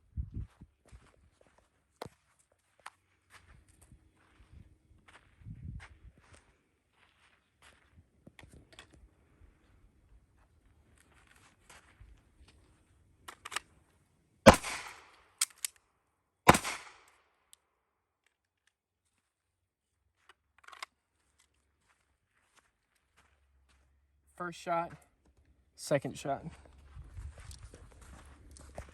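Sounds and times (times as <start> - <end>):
handling clicks and rustling: 13.2 - 13.8, 20.2 - 21.6
pistol shots with echo: 14.5 - 15.2, 16.5 - 17.1.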